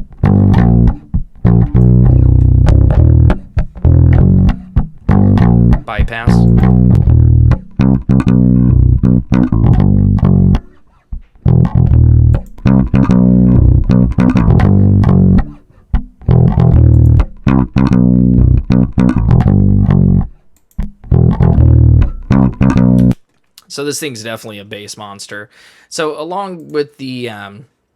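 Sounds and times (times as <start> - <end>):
electric bass riff: 0.0 - 23.2.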